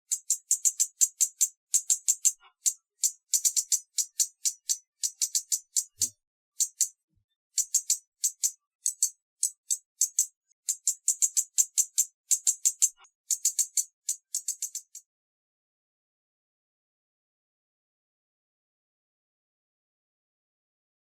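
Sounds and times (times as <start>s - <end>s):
hummingbird chip calls: 0.1s - 7.0s, 7.6s - 15.0s.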